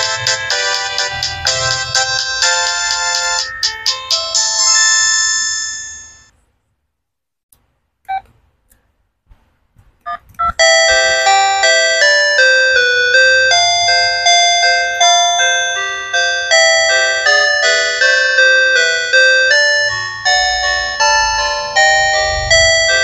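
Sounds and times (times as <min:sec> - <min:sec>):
polyphonic phone ringtone: 0:00.0 - 0:06.3, 0:10.1 - 0:23.0.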